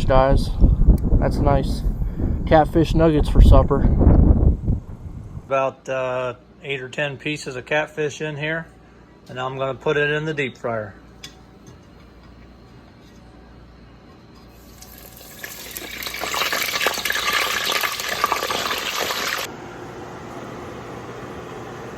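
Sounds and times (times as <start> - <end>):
hot oil sizzling and crackling: 14.6 - 19.5.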